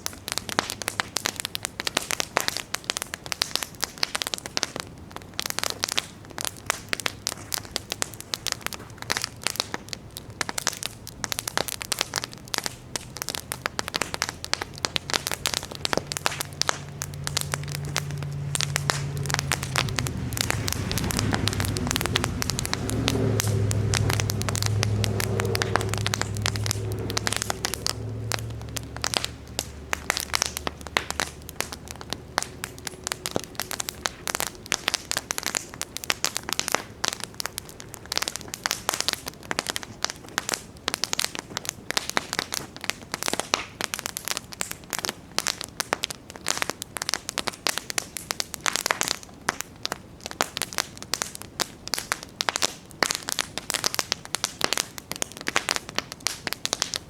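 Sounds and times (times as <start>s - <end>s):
campfire crackling and popping: 0.0s - 57.0s
low hum: 12.7s - 37.8s.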